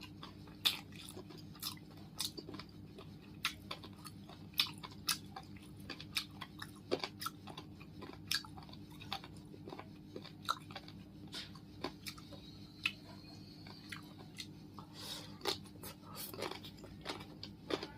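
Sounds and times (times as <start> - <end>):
chewing crunchy salad: 0.0 - 17.9
steady low hum: 0.0 - 17.9.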